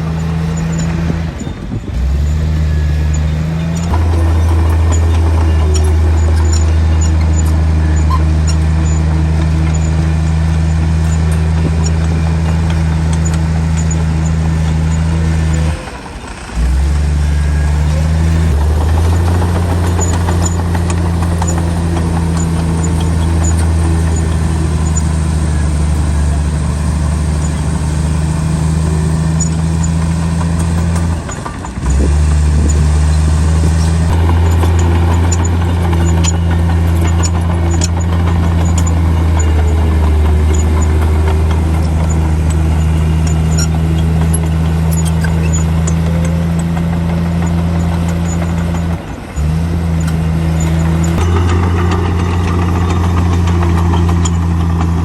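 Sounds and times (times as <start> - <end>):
bulldozer diesel engine droning: 0.0 - 55.0.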